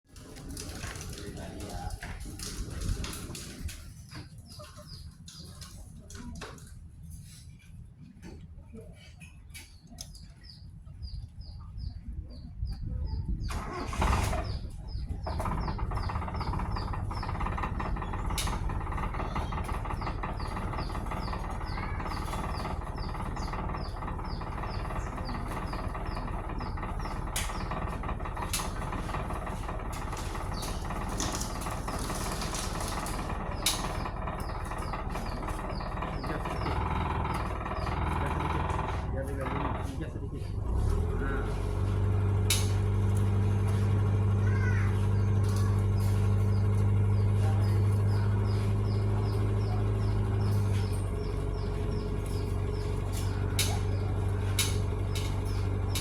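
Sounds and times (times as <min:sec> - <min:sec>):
car engine starting and idling: 0:13.2 - 0:56.0.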